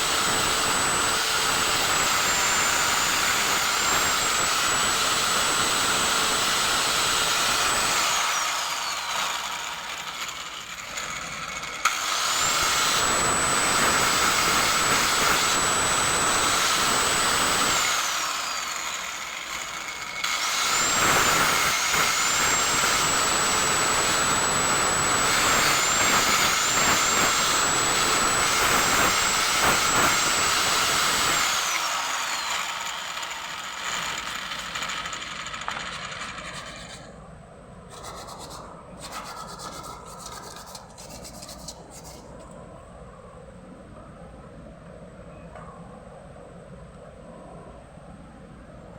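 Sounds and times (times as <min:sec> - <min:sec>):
high-speed power tool whine: 0:00.0 - 0:37.2.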